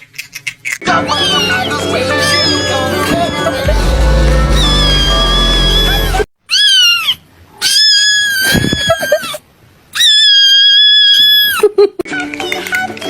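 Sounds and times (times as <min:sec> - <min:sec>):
background music: 0:00.8 - 0:06.3
cat meowing: 0:01.0 - 0:03.3, 0:04.4 - 0:09.4, 0:10.0 - 0:11.6.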